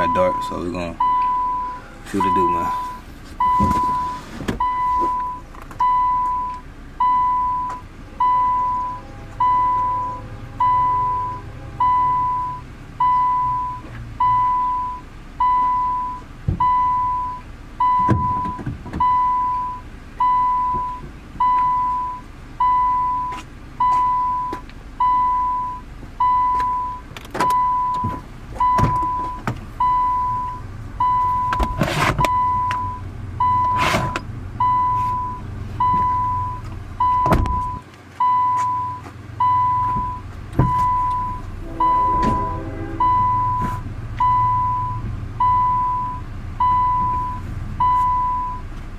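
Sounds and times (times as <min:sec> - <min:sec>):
electronic warning chime beeping: 0:00.0 - 0:18.2, 0:34.6 - 0:48.6.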